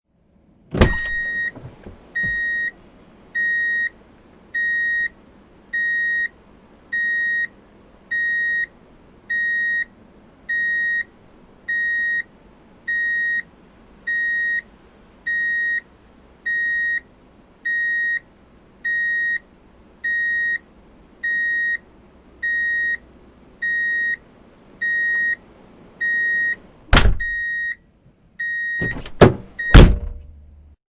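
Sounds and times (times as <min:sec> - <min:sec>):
loud thump: 0:00.7 - 0:02.4, 0:26.9 - 0:27.4, 0:28.8 - 0:30.4
reverse warning beeper: 0:00.9 - 0:01.6, 0:02.2 - 0:02.8, 0:03.4 - 0:04.0, 0:04.6 - 0:05.1, 0:05.8 - 0:06.3, 0:07.0 - 0:07.5, 0:08.1 - 0:08.7, 0:09.3 - 0:09.9, 0:10.5 - 0:11.1, 0:11.7 - 0:12.3, 0:12.9 - 0:13.5, 0:14.1 - 0:14.6, 0:16.5 - 0:17.0, 0:18.9 - 0:19.4, 0:20.0 - 0:20.6, 0:22.4 - 0:23.0, 0:23.6 - 0:24.2, 0:24.8 - 0:25.4, 0:26.0 - 0:26.6, 0:27.2 - 0:27.8, 0:28.4 - 0:29.0.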